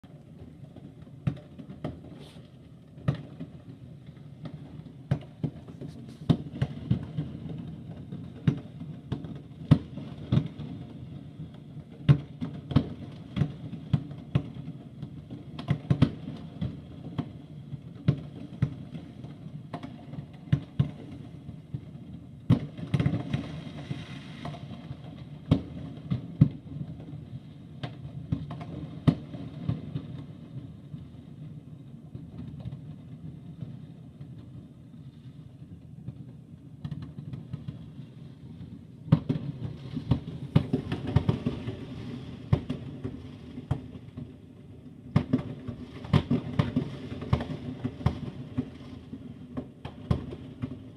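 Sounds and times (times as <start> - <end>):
fireworks crackling: 0.7 - 8.8, 22.6 - 27.3, 36.8 - 50.9
fireworks bangs: 38.6 - 44.4.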